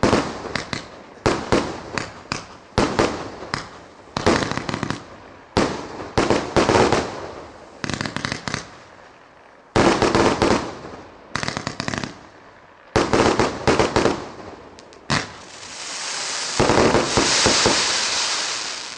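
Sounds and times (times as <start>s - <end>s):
firework hissing crackle: 14.8s - 18.9s
firework bangs: 15.1s - 18.9s.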